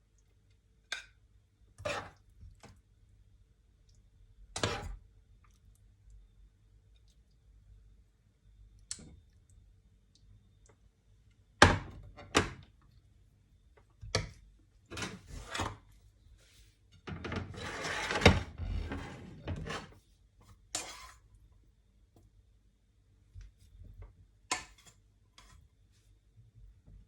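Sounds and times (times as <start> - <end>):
utensils scraping: 17.4 - 20.0, 20.7 - 21.2.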